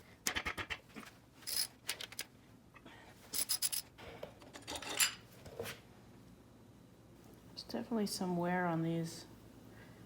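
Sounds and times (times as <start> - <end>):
metal parts clinking: 1.4 - 2.2, 3.3 - 3.9.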